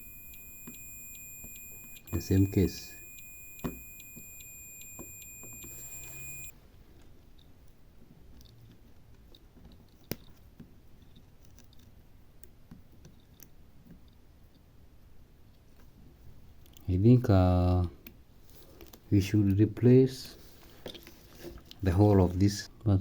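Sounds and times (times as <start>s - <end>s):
multimeter continuity beep: 0.0s - 6.5s
small clicks: 0.0s - 6.5s.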